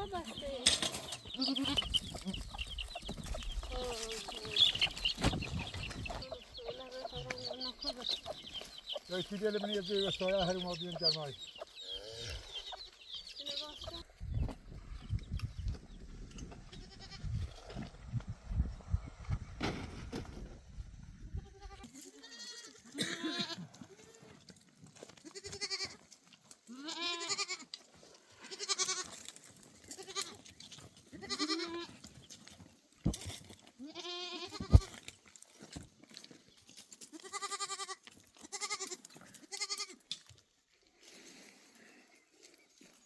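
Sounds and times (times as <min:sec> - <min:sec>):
goats bleating: 0:01.3 - 0:02.6, 0:21.4 - 0:24.4, 0:25.2 - 0:30.5, 0:31.1 - 0:32.0, 0:33.8 - 0:35.0, 0:37.1 - 0:40.1.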